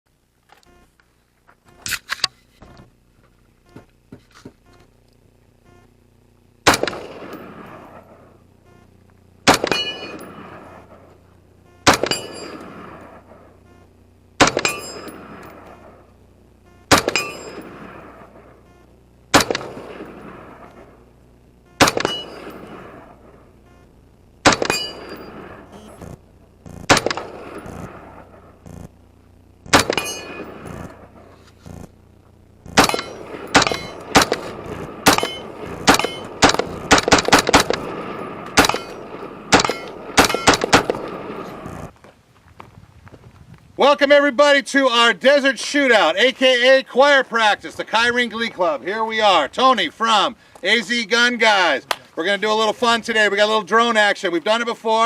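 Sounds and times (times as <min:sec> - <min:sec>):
gunshots ringing on steel: 0:06.7 - 0:08.1, 0:09.4 - 0:11.0, 0:11.9 - 0:13.4, 0:14.4 - 0:16.0, 0:16.9 - 0:18.6, 0:19.3 - 0:21.0, 0:21.8 - 0:23.3, 0:24.4 - 0:26.0, 0:26.9 - 0:28.5, 0:29.7 - 0:31.3, 0:32.7 - 0:41.9.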